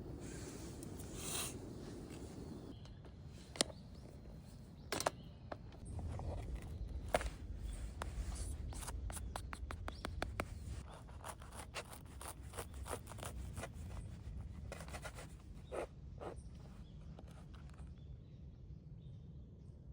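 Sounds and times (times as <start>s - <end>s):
steady low rumble: 5.8s - 10.9s.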